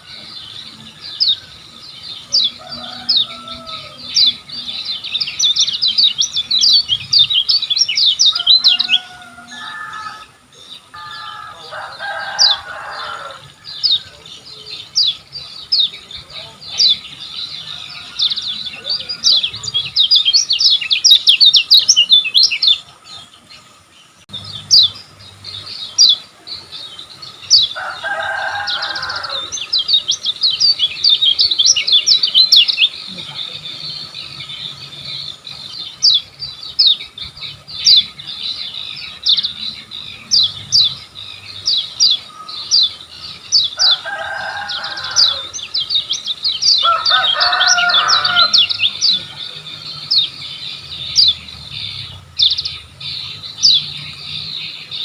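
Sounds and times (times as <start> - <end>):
bird singing high chirps: 0.0 - 55.0.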